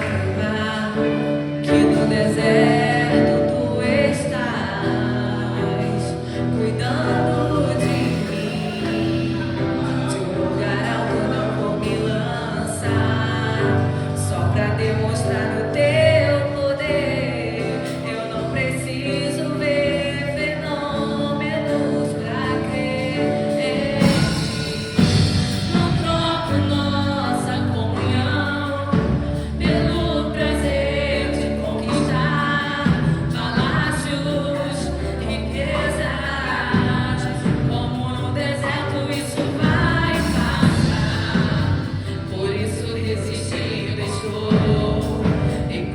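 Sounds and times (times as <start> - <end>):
band playing: 0.0 - 45.9
drums and bass: 0.0 - 45.9
voices singing together: 23.1 - 45.9.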